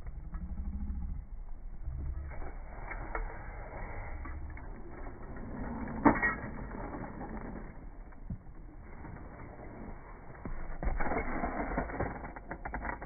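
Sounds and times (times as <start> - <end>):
hand tools creaking and clicking: 4.0 - 9.2, 10.4 - 13.0.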